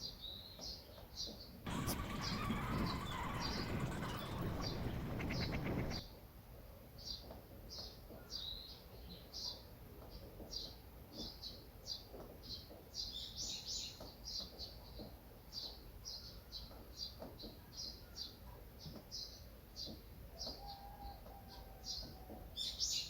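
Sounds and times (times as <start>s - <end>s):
small birds chirping: 1.7s - 6.0s.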